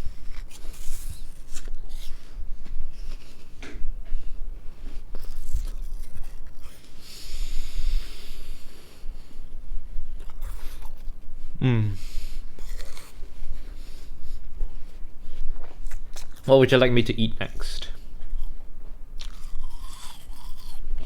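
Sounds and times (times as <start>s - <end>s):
person crunching an apple: 0.0s - 2.4s, 4.8s - 7.1s, 10.2s - 13.7s, 15.6s - 16.5s, 18.2s - 18.6s, 19.2s - 21.0s
breathy hiss: 7.0s - 9.5s.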